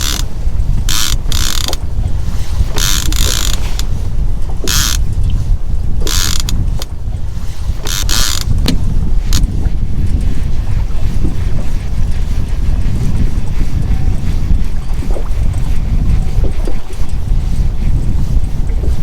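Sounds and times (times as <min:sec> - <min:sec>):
fishing reel cranking: 0:00.0 - 0:01.8, 0:02.7 - 0:03.9, 0:04.6 - 0:05.0, 0:06.0 - 0:06.9, 0:07.8 - 0:08.7
low rumble of boat and wind: 0:00.0 - 0:19.0.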